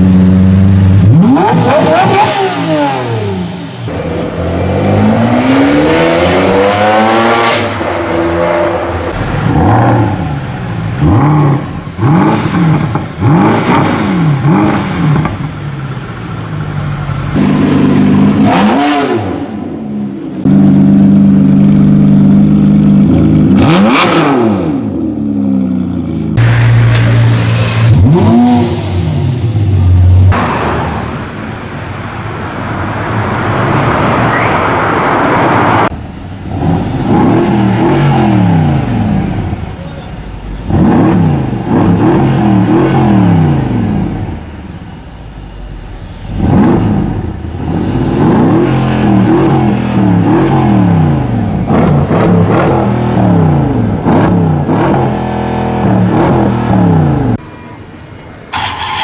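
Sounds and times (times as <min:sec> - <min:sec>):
car engines accelerating through gears: 0:01.0 - 0:15.4, 0:23.0 - 0:25.0, 0:40.7 - 0:44.2, 0:46.4 - 0:57.4.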